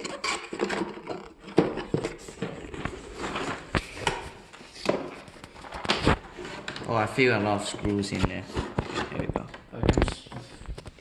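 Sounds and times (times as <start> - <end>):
rustling packaging: 0.0 - 11.0.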